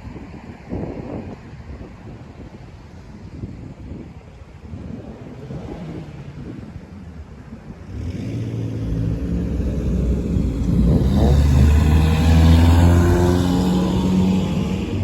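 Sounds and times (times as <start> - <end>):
fire engine accelerating past: 8.0 - 15.0.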